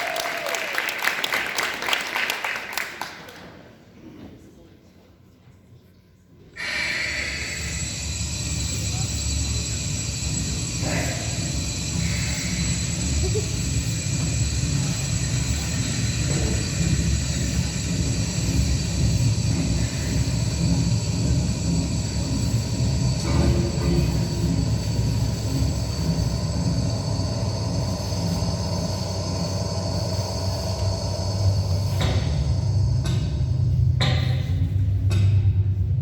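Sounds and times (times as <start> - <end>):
low machinery rumble: 6.6 - 36.0.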